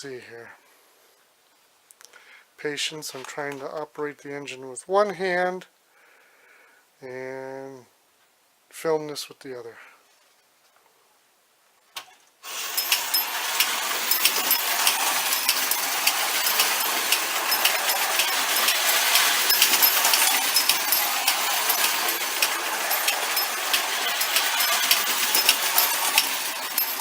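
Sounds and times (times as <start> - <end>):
wind-up toy train whirring: 12.4 - 27.0
clockwork click: 12.5 - 27.0
toy bell clinking: 12.5 - 27.0.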